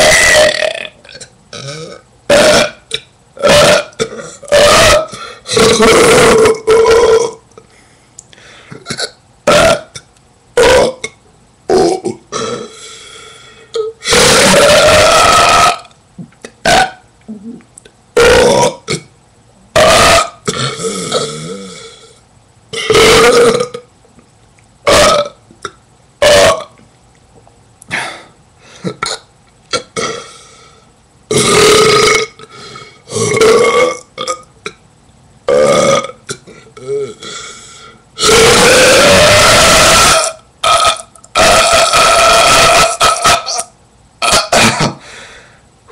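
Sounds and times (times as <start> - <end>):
person burping: 0.0 - 7.4, 8.7 - 12.8, 13.7 - 17.6, 18.2 - 19.1, 19.7 - 22.1, 22.7 - 23.9, 24.8 - 26.8, 27.9 - 30.4, 31.3 - 34.8, 35.5 - 37.4, 38.2 - 45.1.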